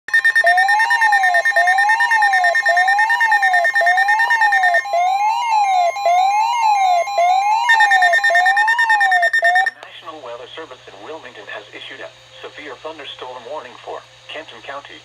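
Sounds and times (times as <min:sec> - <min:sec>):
siren-like alert tone sweeping: 0:00.1 - 0:09.8
steady high-pitched tones: 0:00.1 - 0:09.8.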